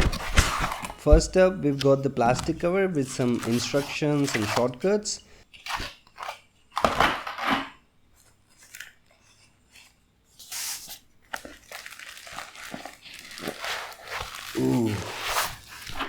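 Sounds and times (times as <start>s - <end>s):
plastic packaging crinkling: 10.4s - 16.0s.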